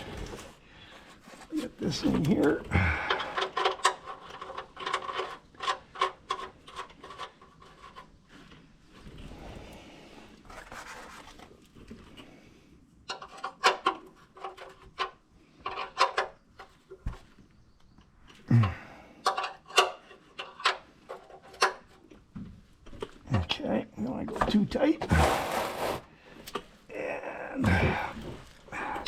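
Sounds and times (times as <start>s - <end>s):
metal clicks and knocks: 2.1s - 8.1s, 13.1s - 17.1s, 19.2s - 23.2s.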